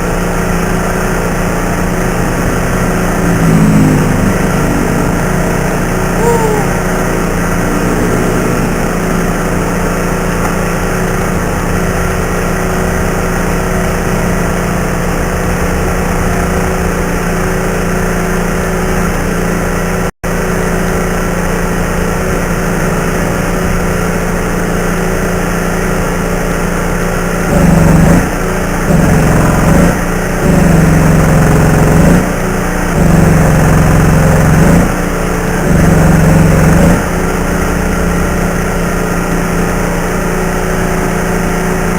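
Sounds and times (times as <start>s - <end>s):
machine humming: 0.0s - 41.9s.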